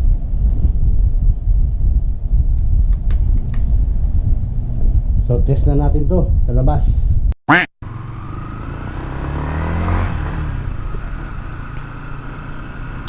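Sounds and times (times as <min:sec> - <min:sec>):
wind noise: 0:00.0 - 0:07.3
motorcycle engine accelerating: 0:07.8 - 0:13.0.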